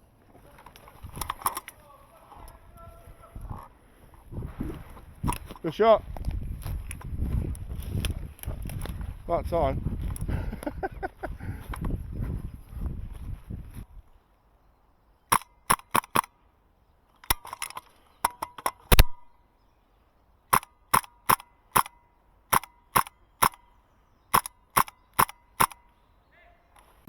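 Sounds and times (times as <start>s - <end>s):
airsoft gun shots: 18.3s - 19.3s, 20.5s - 23.7s, 24.3s - 25.8s.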